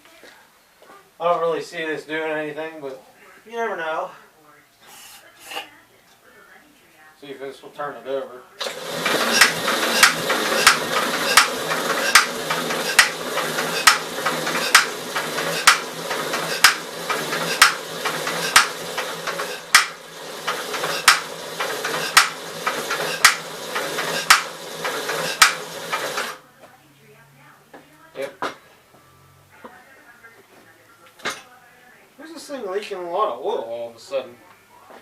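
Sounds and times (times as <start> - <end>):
power tool whirring: 8.6 - 26.4
sharp metallic engine knock: 9.2 - 26.3.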